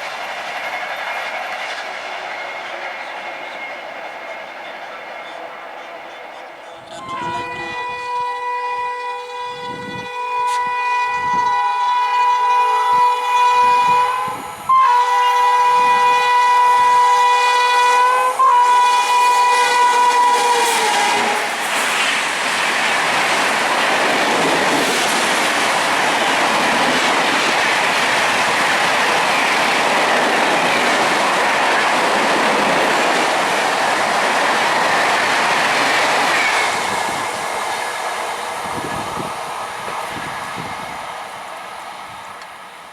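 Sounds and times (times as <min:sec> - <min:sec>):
train wheels clattering on rails: 0:00.0 - 0:06.7, 0:18.7 - 0:41.7
train horn blasts: 0:06.7 - 0:21.6.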